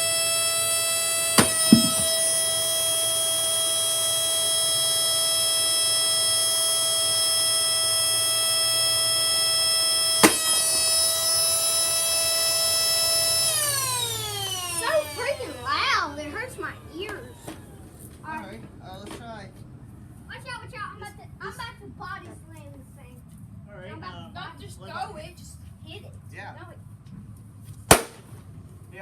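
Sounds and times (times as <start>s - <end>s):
vacuum cleaner motor whine: 0.0s - 19.3s
sharp knocks: 1.4s - 2.2s, 10.2s - 10.9s.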